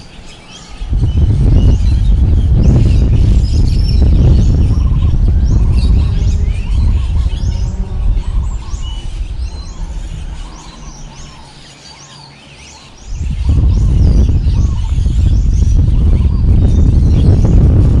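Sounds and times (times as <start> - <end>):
strong wind gusting: 0.0 - 11.6, 12.9 - 18.0
small birds chirping: 0.0 - 18.0.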